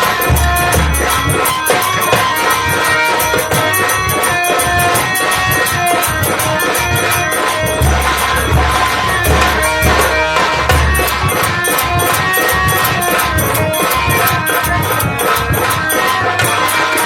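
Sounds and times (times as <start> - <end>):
held melody instrument notes: 0.0 - 17.0
jingling metal percussion: 0.0 - 17.0
deep drum strokes: 4.7 - 14.9.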